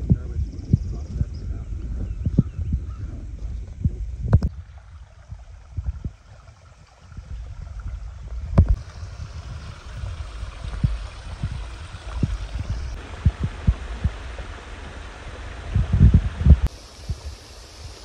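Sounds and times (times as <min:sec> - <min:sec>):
wind buffeting microphone: 0:00.0 - 0:18.0.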